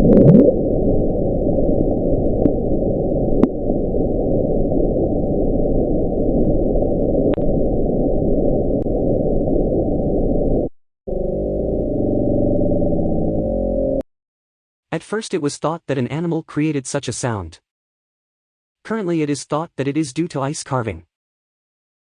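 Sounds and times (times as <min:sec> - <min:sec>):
low underwater rushing noise: 0:00.0 - 0:14.0.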